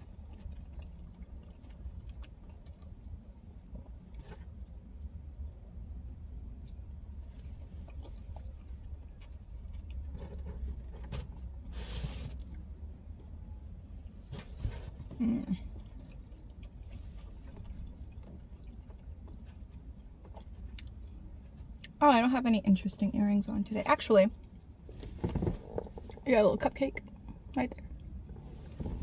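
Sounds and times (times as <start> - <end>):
person chewing pizza: 0.0 - 22.0
low steady rumble: 0.0 - 29.0.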